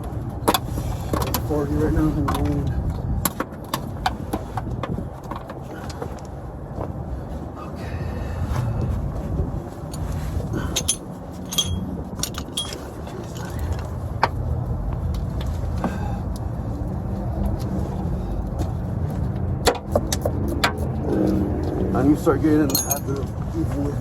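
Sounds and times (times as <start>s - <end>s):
wind buffeting microphone: 0.0s - 24.0s
metallic clinks: 10.7s - 12.8s, 22.6s - 23.2s.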